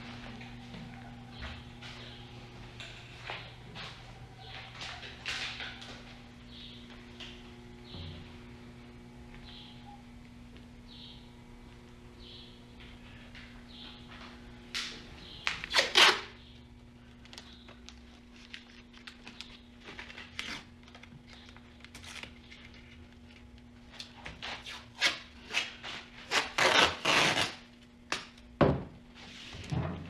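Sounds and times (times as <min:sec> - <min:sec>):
faint steady hum: 0:00.0 - 0:30.0
rustling handling noises: 0:16.9 - 0:24.7.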